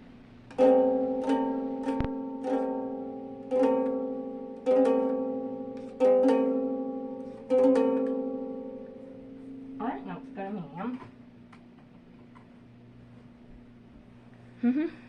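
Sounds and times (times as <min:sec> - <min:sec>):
ukulele chord strummed by fan: 0:00.5 - 0:09.8.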